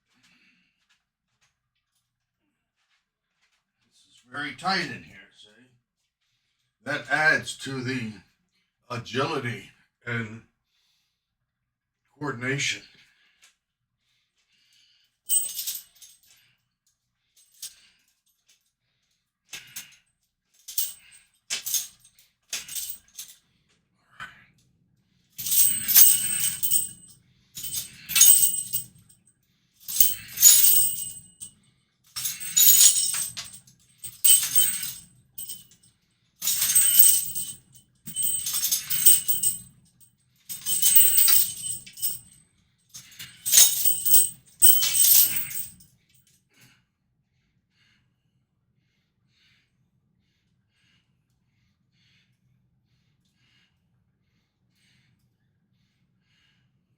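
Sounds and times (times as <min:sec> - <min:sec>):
metal chains jangling: 0:15.3 - 0:16.5, 0:17.4 - 0:18.2, 0:20.6 - 0:23.4, 0:25.4 - 0:29.2, 0:29.8 - 0:31.5, 0:32.1 - 0:35.8, 0:36.4 - 0:45.8.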